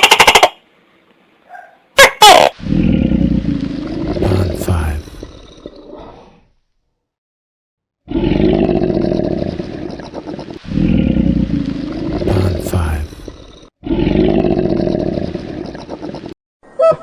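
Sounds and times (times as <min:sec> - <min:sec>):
lion roaring: 0:02.6 - 0:06.6, 0:08.0 - 0:16.4.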